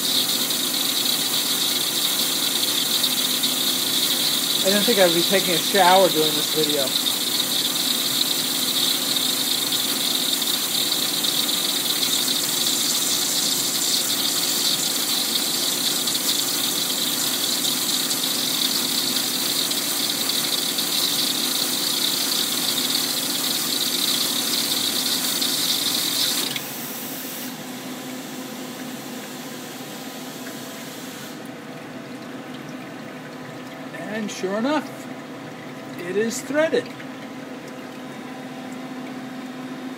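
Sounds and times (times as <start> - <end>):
water jet and pump hiss: 0.0 - 31.4.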